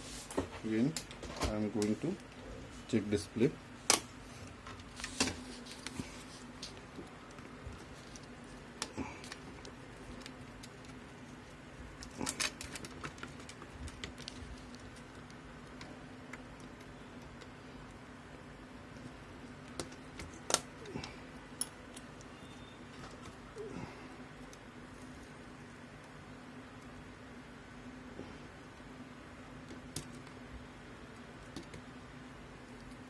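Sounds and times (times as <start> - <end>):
faint steady hum: 0.0 - 33.0
laptop parts clicking and tapping: 6.6 - 18.0, 19.0 - 23.4, 31.1 - 31.9.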